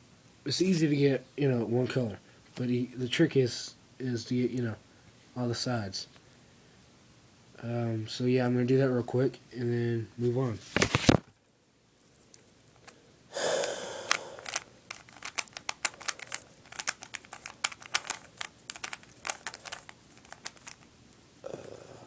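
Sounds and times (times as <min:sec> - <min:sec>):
puzzle cube plastic clicks: 0:13.6 - 0:20.9
handling rustle: 0:14.1 - 0:21.2.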